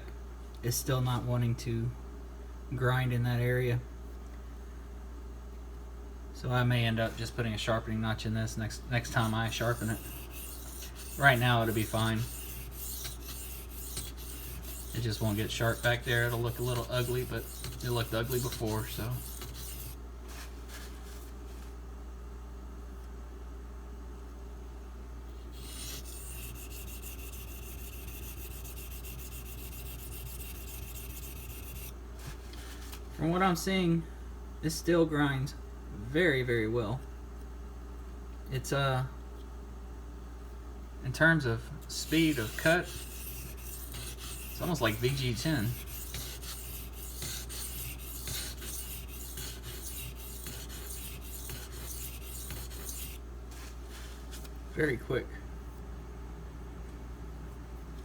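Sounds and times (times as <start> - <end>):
knife blade grinding on whetstone: 9.0 - 20.0, 25.5 - 31.9, 41.9 - 53.2.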